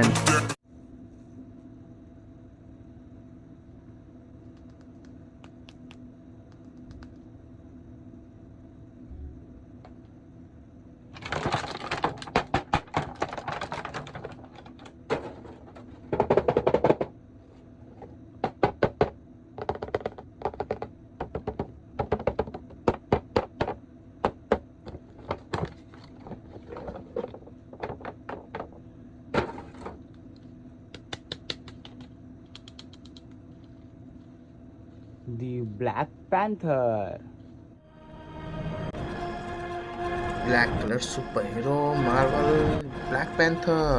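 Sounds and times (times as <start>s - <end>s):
faint steady hum: 0.0s - 43.9s
plastic packaging rustling: 11.2s - 16.1s.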